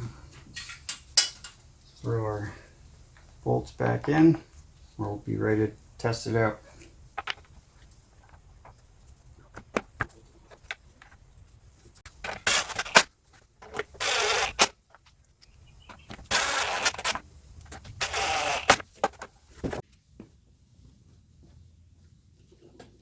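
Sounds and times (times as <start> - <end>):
recoil starter rope whirring: 12.3 - 14.8, 15.9 - 18.8.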